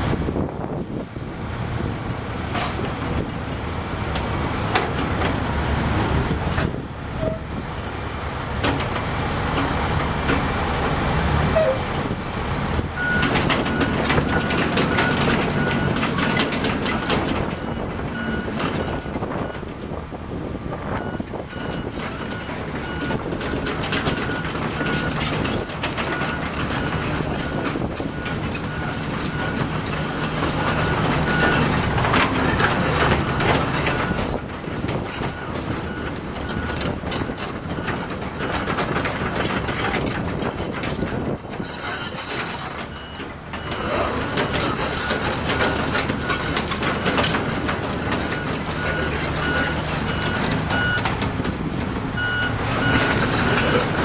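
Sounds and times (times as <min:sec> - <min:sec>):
excavator diesel engine: 0:00.0 - 0:54.0
metal clanking and rattling: 0:02.4 - 0:03.5, 0:08.5 - 0:11.8, 0:13.0 - 0:20.0, 0:20.9 - 0:54.0.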